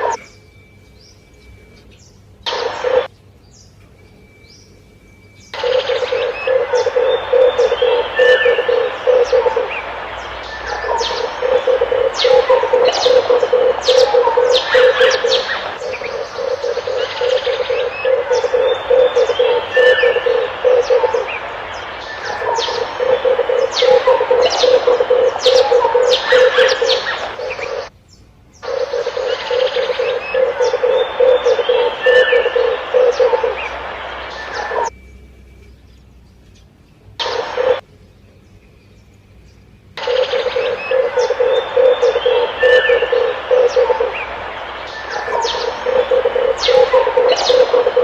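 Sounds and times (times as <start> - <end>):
small birds chirping: 0.0 - 48.0
dove cooing: 2.5 - 3.1, 5.6 - 27.9, 28.6 - 34.9, 37.2 - 37.8, 40.0 - 48.0.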